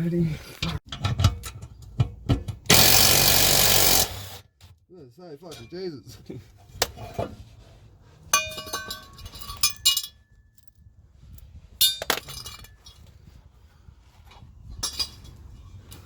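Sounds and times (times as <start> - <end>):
metal tools clinking and clattering: 8.3 - 10.8, 11.8 - 13.2, 14.7 - 16.0.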